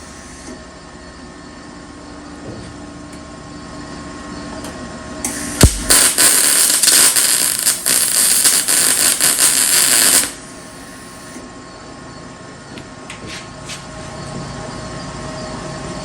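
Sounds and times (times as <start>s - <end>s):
welding arc crackling and sizzling: 5.3s - 11.4s.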